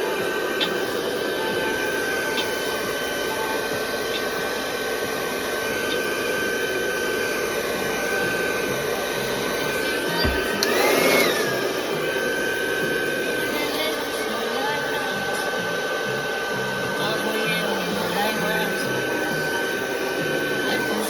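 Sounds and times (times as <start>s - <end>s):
hair dryer blowing: 0.0s - 21.0s.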